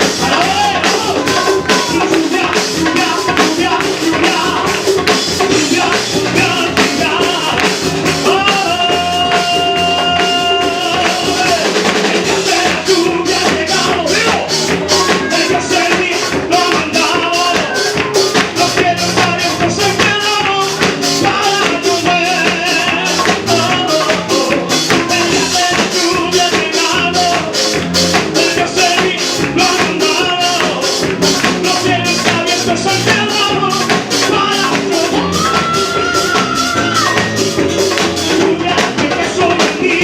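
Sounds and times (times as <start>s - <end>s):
fast percussive beat: 0.0s - 40.0s
praise song played loud: 0.0s - 40.0s.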